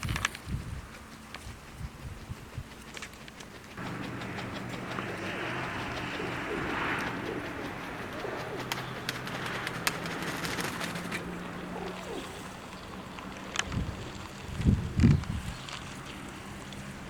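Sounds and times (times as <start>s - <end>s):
pigeons cooing: 0.0s - 15.7s
wind rushing: 3.8s - 13.0s.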